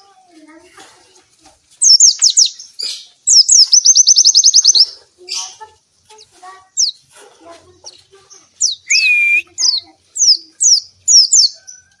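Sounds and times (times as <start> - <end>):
bird whistling song: 3.3 - 4.9, 8.6 - 11.9.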